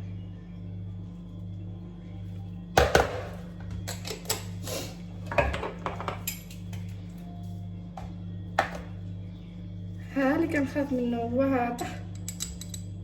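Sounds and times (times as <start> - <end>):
soft background music: 0.0 - 13.0
steady low hum: 0.0 - 13.0
utensils clinking and knocking: 5.3 - 6.8, 11.8 - 13.0.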